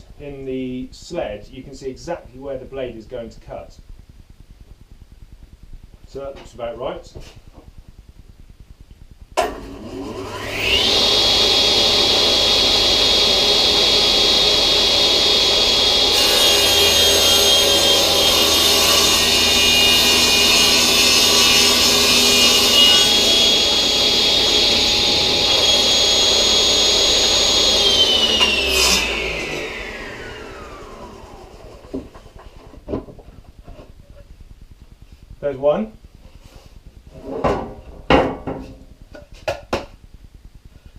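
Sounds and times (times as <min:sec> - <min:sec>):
table saw whining: 0:09.4 - 0:32.4.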